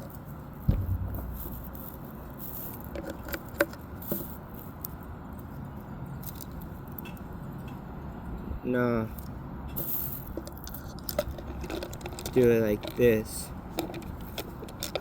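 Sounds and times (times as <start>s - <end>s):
knock: 0.7s - 1.8s
fireworks clicking and rattling: 0.7s - 3.8s.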